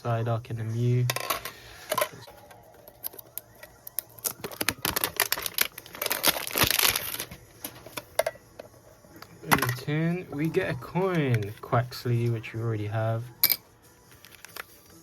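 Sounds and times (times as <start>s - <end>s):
plastic wrapping crinkling and tearing: 2.9s - 8.1s.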